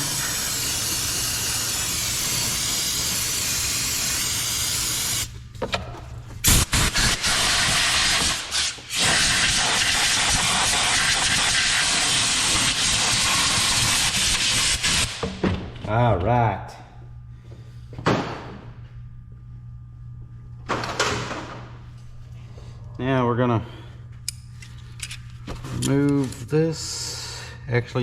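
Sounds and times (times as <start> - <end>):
pressurised spray hissing: 0.0 - 5.3.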